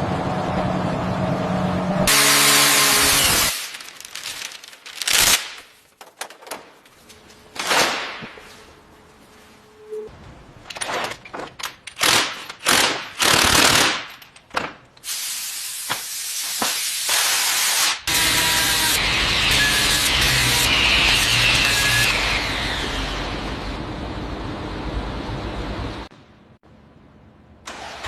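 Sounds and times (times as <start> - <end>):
compressed-air tool hissing: 15.0 - 18.0.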